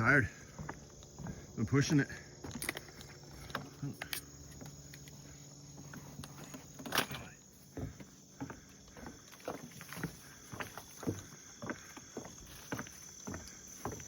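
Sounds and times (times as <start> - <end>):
insects chirping: 0.0 - 14.0.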